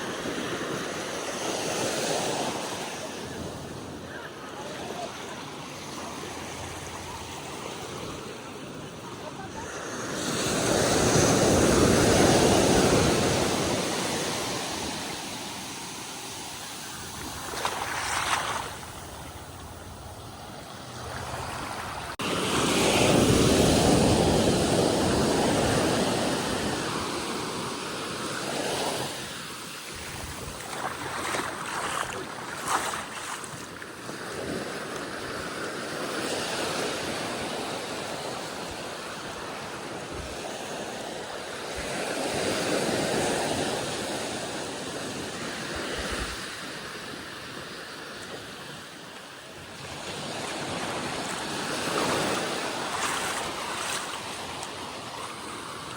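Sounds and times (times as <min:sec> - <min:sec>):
ocean waves breaking on beach: 0:00.0 - 0:55.9
wind buffeting microphone: 0:29.9 - 0:34.6.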